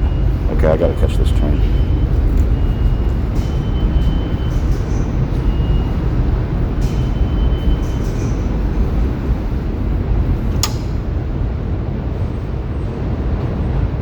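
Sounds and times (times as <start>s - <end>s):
subway train rumbling: 0.0s - 14.0s
sharp click: 10.5s - 11.0s.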